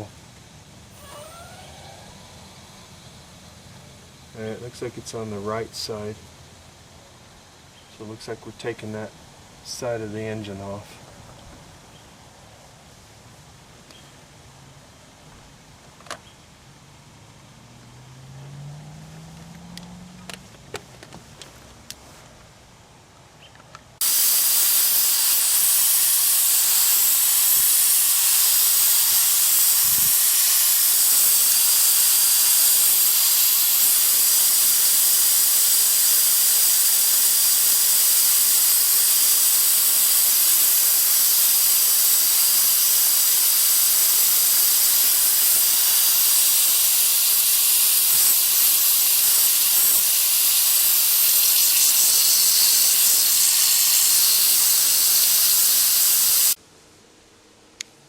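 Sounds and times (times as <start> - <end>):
compressed air hissing: 0.8 - 3.6, 24.0 - 56.6.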